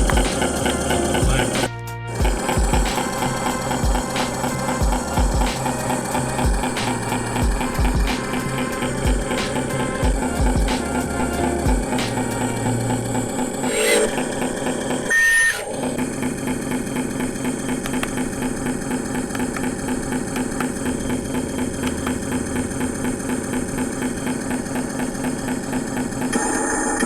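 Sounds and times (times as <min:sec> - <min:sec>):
rc truck pulsing drone: 0:00.0 - 0:27.0.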